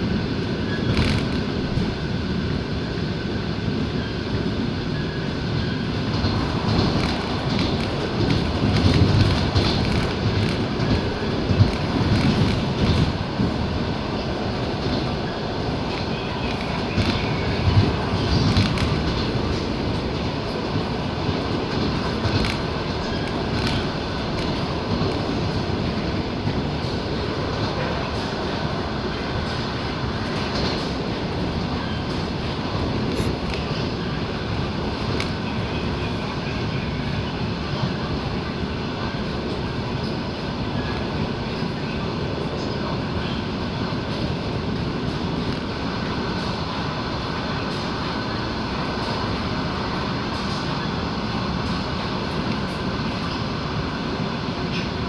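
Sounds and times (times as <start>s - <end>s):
wheels clacking over rail joints: 0.0s - 2.6s, 3.9s - 55.0s
train rumbling on rails: 0.0s - 55.0s
wheels knocking over rail joints: 0.8s - 1.9s, 6.0s - 20.0s.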